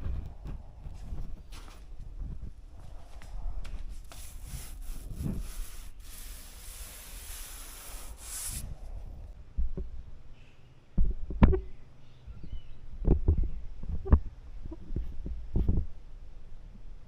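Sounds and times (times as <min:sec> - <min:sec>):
scraping and rubbing on panel: 0:03.6 - 0:08.7.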